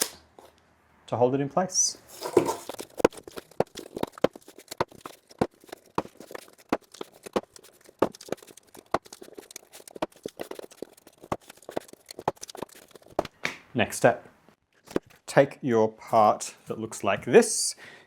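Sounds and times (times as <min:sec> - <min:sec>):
cardboard being folded: 0:02.1 - 0:13.4
taps and knocks on cardboard: 0:02.9 - 0:13.6.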